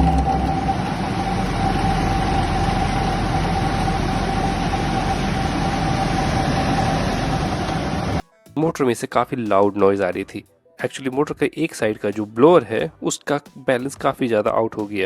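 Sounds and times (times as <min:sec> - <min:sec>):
blower motor droning: 0:00.0 - 0:08.2.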